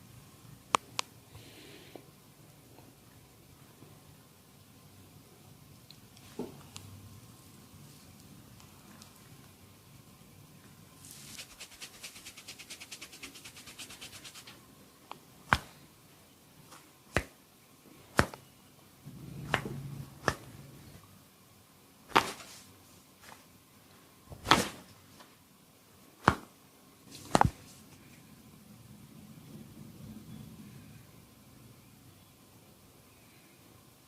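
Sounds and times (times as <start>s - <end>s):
fingernails scratching scalp: 11.1s - 14.6s
hand smacks on head: 27.3s - 27.6s.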